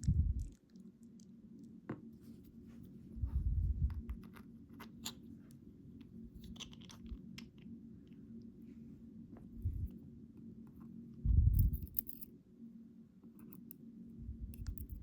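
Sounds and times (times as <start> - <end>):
small lock parts clicking: 6.4 - 7.6, 11.6 - 12.3, 14.6 - 15.0.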